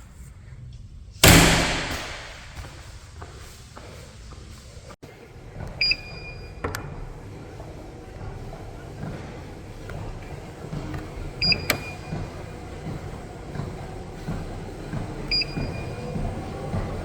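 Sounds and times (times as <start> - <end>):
dull thuds: 1.2 - 2.7
treadmill hum: 1.2 - 2.7, 5.1 - 17.0.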